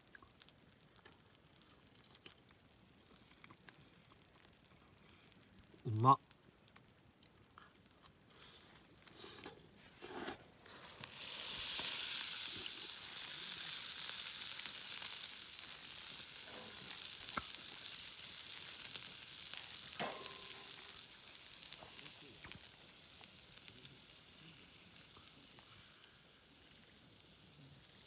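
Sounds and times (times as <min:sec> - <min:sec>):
food sizzling in a pan: 0:08.0 - 0:28.0.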